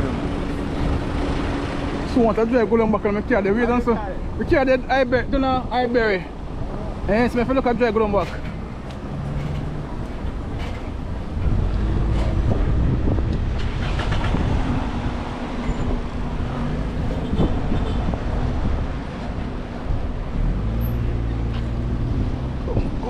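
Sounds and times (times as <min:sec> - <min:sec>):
heavy vehicle engines rumbling: 0:00.0 - 0:23.0.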